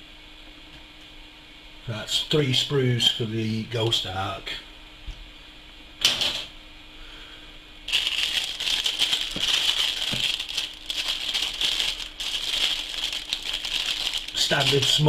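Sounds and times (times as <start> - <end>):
packaging rustling: 7.9 - 15.0
plastic parts rattling: 7.9 - 15.0.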